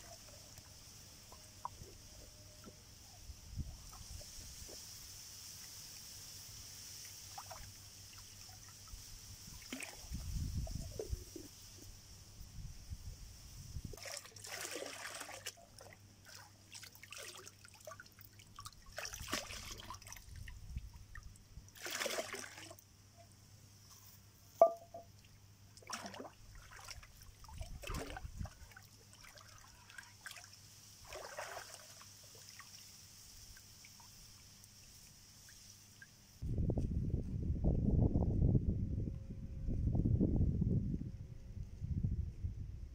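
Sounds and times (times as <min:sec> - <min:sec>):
water trickling and sloshing: 0:00.0 - 0:12.0, 0:13.6 - 0:23.3, 0:24.0 - 0:36.4.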